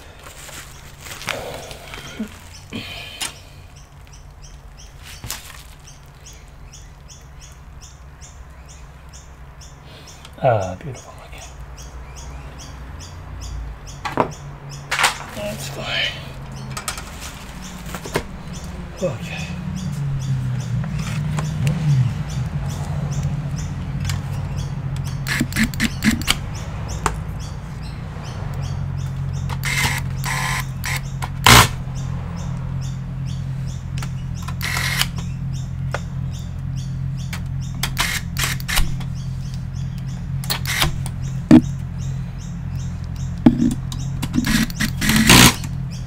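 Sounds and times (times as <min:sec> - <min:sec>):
small clicks and taps: 0:43.0 - 0:45.0.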